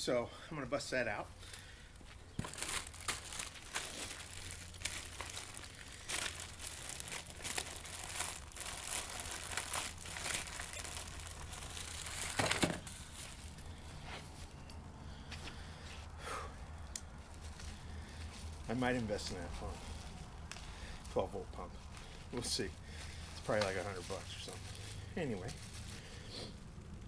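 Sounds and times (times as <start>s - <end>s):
plastic bag crinkling and tearing: 2.3s - 13.8s, 17.2s - 27.0s.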